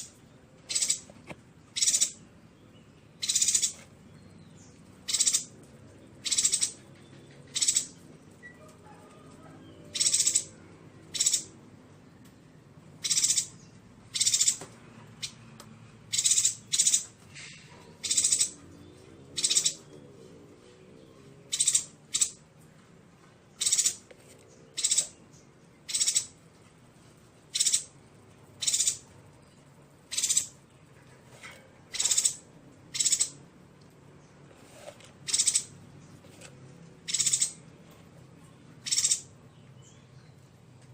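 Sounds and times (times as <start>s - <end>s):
bird calling high-pitched: 0.0s - 1.1s, 1.7s - 2.2s, 3.2s - 3.8s, 5.0s - 5.5s, 6.2s - 8.6s, 9.9s - 11.6s, 13.0s - 14.6s, 16.1s - 17.1s, 18.0s - 18.6s, 19.4s - 19.9s, 21.5s - 22.4s, 23.6s - 24.0s, 24.7s - 25.2s, 25.8s - 26.4s, 27.5s - 27.9s, 28.6s - 29.0s, 30.1s - 30.6s, 31.9s - 33.4s, 35.3s - 35.7s, 37.1s - 37.6s, 38.8s - 39.4s.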